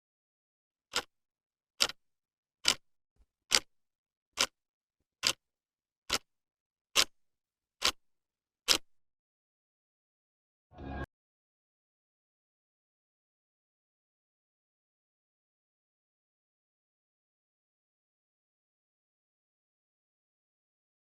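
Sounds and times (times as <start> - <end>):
clock ticking: 0.9 - 1.1, 2.6 - 2.8, 4.4 - 4.6, 5.2 - 5.4, 6.1 - 6.3.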